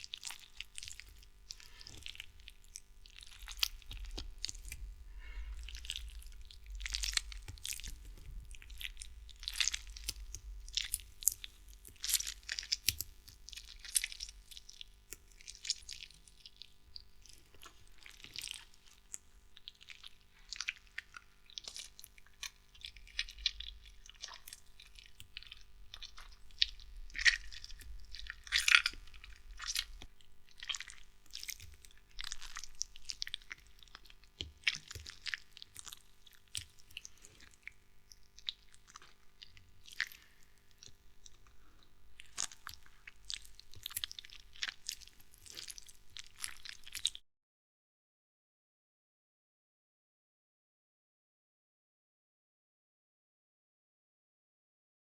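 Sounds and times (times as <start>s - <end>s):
wet squelches and crunches: 0.0s - 47.2s
low rumble: 3.4s - 11.8s.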